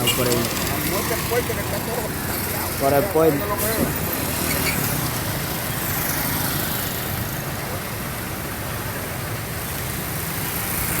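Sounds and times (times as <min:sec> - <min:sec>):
vehicle engine rumble: 0:00.0 - 0:06.4
road and wind noise: 0:00.0 - 0:11.0.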